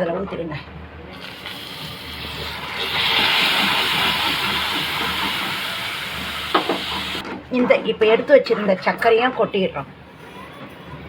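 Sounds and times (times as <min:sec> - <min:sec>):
caramel sizzling in a pan: 0:01.2 - 0:07.2.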